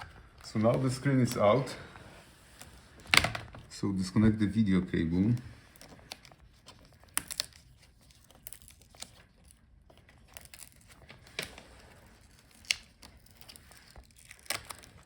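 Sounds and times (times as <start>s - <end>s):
plastic clicks and crinkles: 5.2s - 15.0s.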